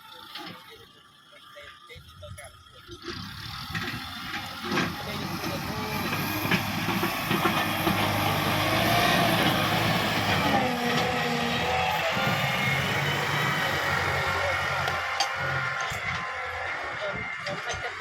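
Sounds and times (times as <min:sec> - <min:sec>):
tractor diesel engine under load: 0:00.0 - 0:18.0
sharp clanks and knocks: 0:02.9 - 0:11.2, 0:14.8 - 0:16.4
wavering whining tones: 0:03.8 - 0:18.0.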